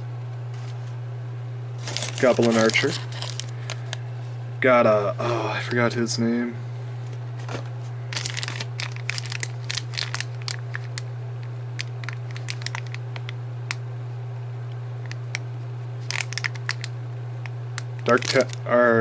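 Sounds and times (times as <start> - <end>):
steady low hum: 0.0 - 19.0
packaging crinkling: 1.8 - 4.0, 7.5 - 13.8, 16.0 - 16.9, 17.8 - 18.7.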